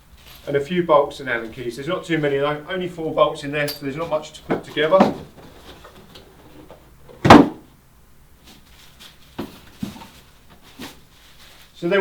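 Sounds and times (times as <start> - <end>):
soft knocks: 4.4 - 7.6
object thumping down: 7.1 - 7.6.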